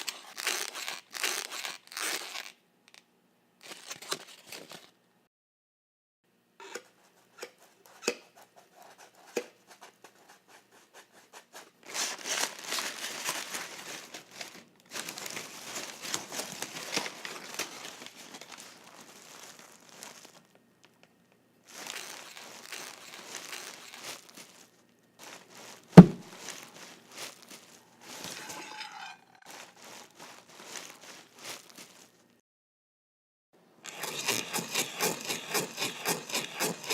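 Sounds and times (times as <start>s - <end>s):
packing material crinkling and tearing: 0.0s - 2.6s, 3.6s - 4.9s, 11.8s - 21.0s, 21.7s - 28.5s, 29.4s - 32.2s
loud thud: 26.0s - 26.2s.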